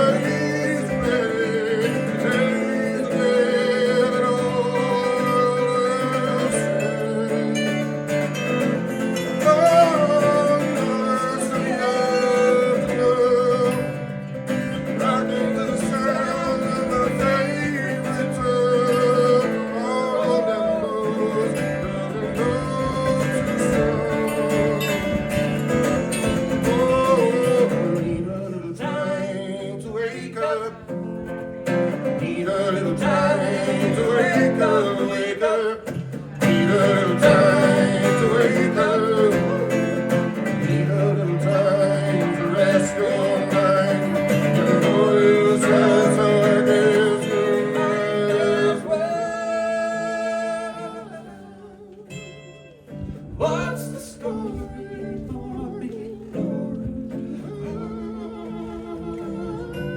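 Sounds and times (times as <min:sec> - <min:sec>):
acoustic bluegrass band playing: 0:00.0 - 0:59.9.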